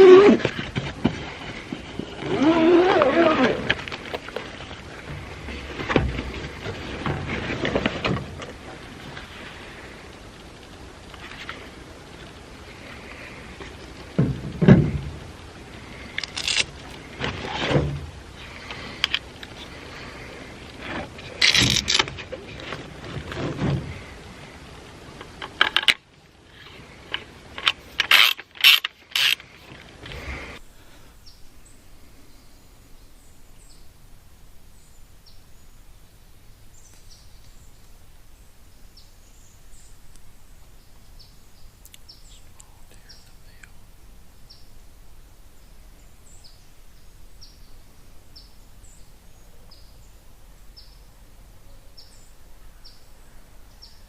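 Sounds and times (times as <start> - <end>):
gear clunking and rattling: 0.0 - 9.3, 13.6 - 15.4, 20.8 - 24.3.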